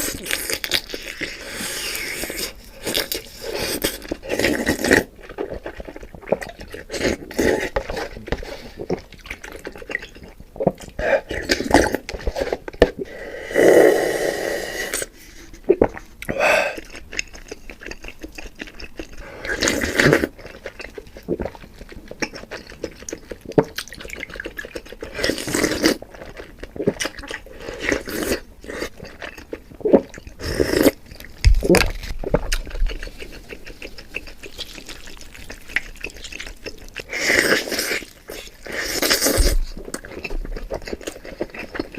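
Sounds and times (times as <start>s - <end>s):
slurping noodles: 0.0s - 9.2s, 9.9s - 16.9s, 23.5s - 29.0s, 29.8s - 31.0s, 32.3s - 41.9s
chewing: 0.0s - 13.1s, 15.4s - 41.9s.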